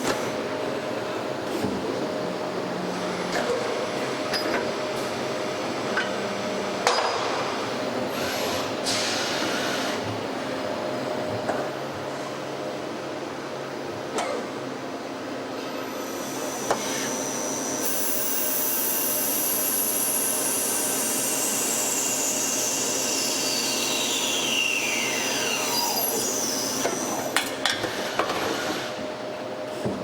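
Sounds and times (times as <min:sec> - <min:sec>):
lathe running with whine: 0:15.8 - 0:27.4.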